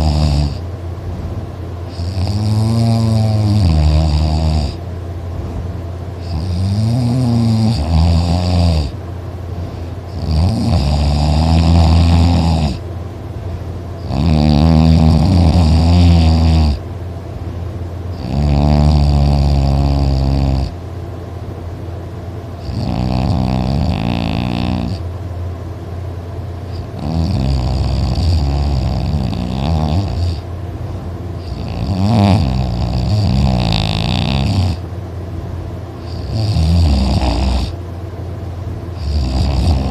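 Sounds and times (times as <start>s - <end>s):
person snoring very loud: 0.0s - 0.6s, 1.9s - 4.8s, 6.2s - 9.0s, 10.1s - 12.8s, 14.0s - 16.8s, 18.1s - 20.8s, 22.6s - 25.1s, 26.7s - 30.4s, 31.4s - 34.8s, 36.0s - 37.8s, 39.0s - 39.9s.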